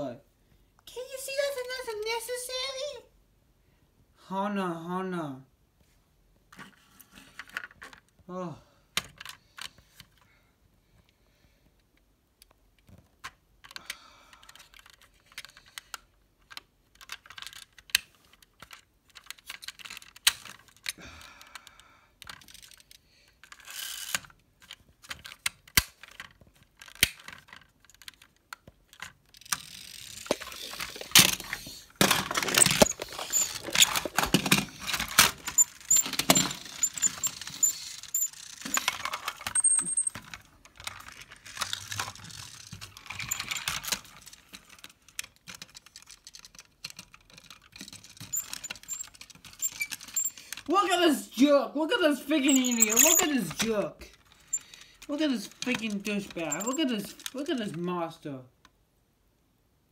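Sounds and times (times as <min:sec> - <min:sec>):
small hard objects clattering: 0:30.0 - 0:43.9, 0:52.5 - 0:53.8.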